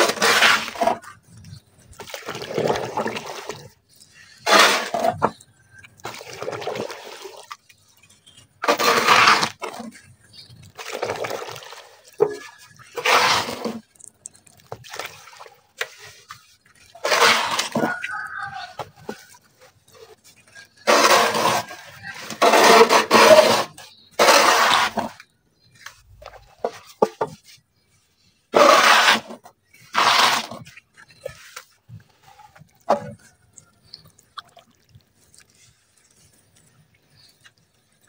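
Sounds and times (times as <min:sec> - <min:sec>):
faint crackles: 0:00.0 - 0:22.4, 0:29.3 - 0:38.0
dirt crumbling and crunching: 0:00.0 - 0:27.5.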